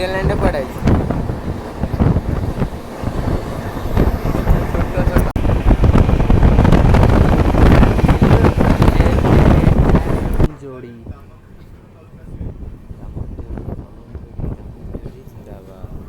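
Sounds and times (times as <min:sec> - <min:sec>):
train knocks and rattles: 0:00.0 - 0:10.5
passenger train rumbling: 0:00.0 - 0:16.0
wind on microphone: 0:00.0 - 0:16.0.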